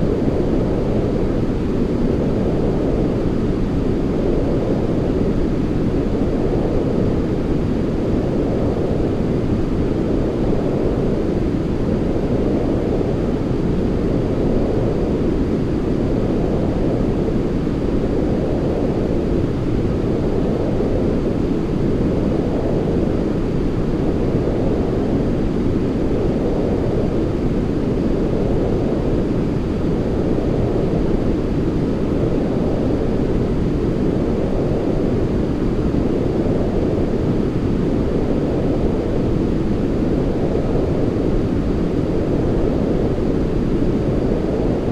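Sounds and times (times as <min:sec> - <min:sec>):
deep muffled white noise: 0:00.0 - 0:44.9.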